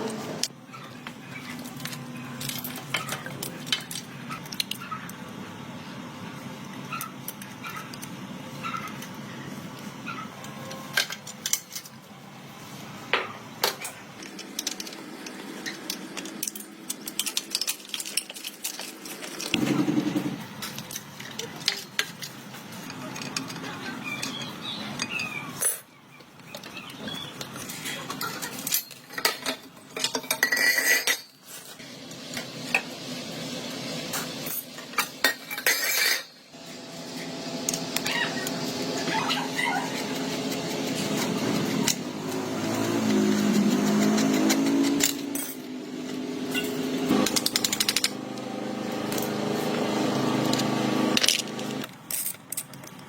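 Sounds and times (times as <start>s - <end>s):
metal tools clinking and knocking: 1.3s - 4.8s, 13.2s - 19.6s, 20.6s - 31.7s, 34.4s - 36.4s, 43.3s - 45.7s, 46.5s - 48.2s, 50.5s - 53.0s
motor running: 36.6s - 51.9s.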